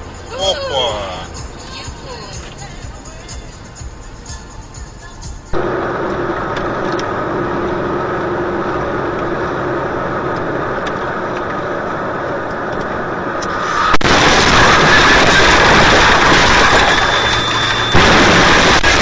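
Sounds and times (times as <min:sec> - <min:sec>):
car engine and road noise: 0:00.0 - 0:19.0
sudden sharp bang: 0:13.9 - 0:19.0.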